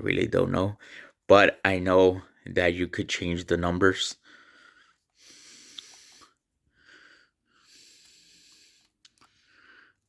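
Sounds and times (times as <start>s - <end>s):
soft breathing: 0.8s - 1.2s, 4.2s - 10.0s.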